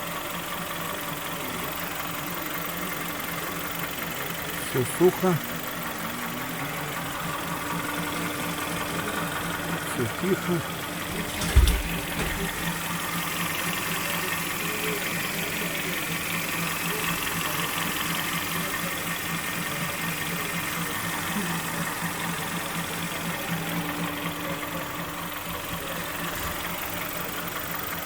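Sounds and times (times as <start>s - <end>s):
car engine idling: 0.0s - 28.0s.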